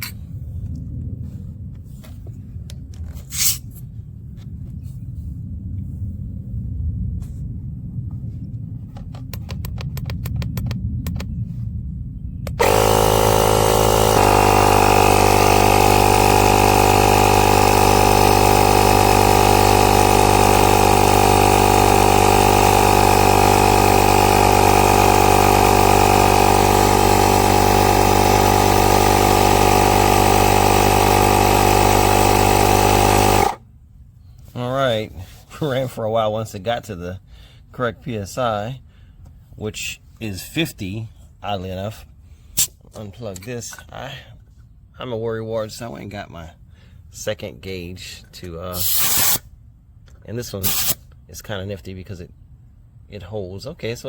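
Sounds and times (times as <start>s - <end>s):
low rumble: 0.0s - 12.8s
air compressor humming: 12.5s - 33.6s, 48.7s - 49.4s, 50.6s - 51.0s.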